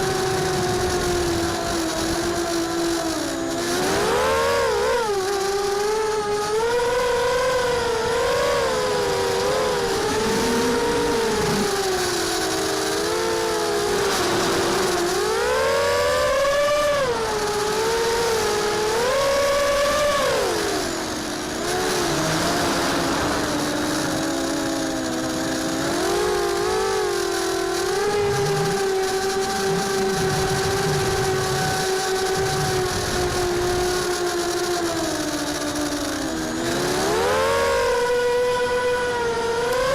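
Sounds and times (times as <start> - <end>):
quadcopter motors whining: 0.0 - 39.9.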